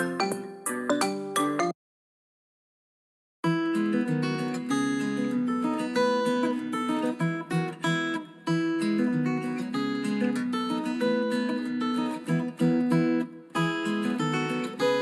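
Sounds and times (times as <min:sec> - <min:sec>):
strummed acoustic guitar ringtone: 0:03.4 - 0:15.0.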